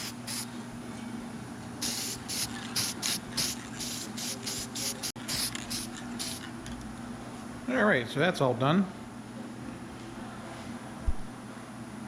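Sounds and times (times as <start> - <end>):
aerosol can spraying: 0.0 - 0.5, 1.8 - 6.5.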